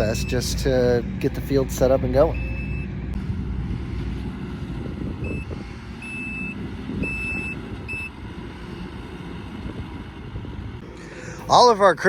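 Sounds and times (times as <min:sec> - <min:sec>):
backup alarm beeping: 0:00.0 - 0:00.7, 0:02.3 - 0:02.9, 0:05.2 - 0:08.2
engine running low: 0:00.0 - 0:12.0.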